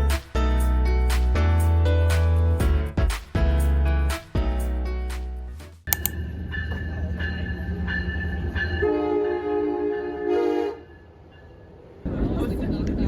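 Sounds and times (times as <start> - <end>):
train rumbling: 6.0 - 10.2, 10.8 - 13.0
train horn chord: 8.8 - 10.9.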